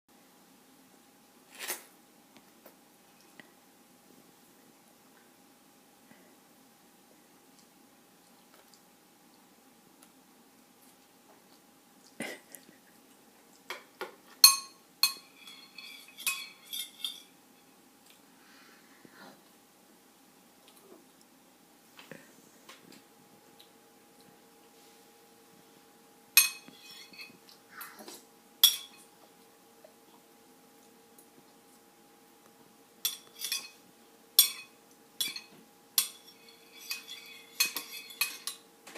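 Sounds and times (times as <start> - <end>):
spoon clinking against bowl: 14.4 - 17.3, 26.4 - 27.4, 28.6 - 29.0, 33.1 - 33.8, 34.4 - 38.6.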